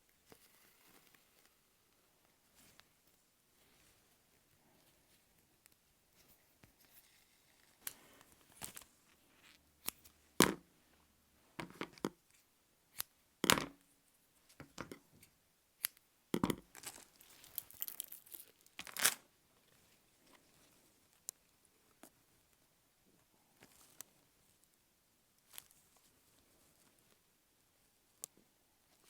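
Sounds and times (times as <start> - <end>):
paper rustling: 16.7 - 19.2
paper tearing: 18.8 - 19.2.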